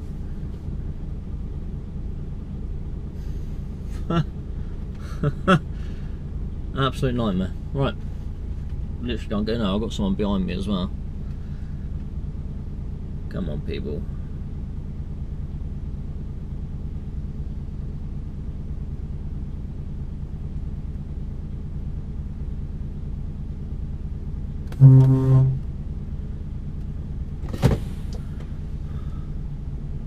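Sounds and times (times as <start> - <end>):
diesel engine idling: 0.0 - 30.0
horn blast: 24.7 - 25.7.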